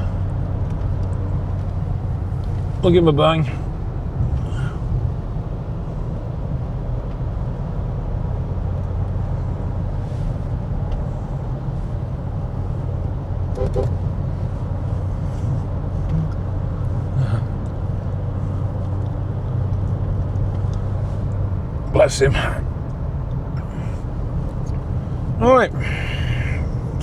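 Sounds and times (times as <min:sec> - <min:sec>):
road and engine drone inside car: 0:00.0 - 0:27.0
vehicle horn toot: 0:13.5 - 0:14.0.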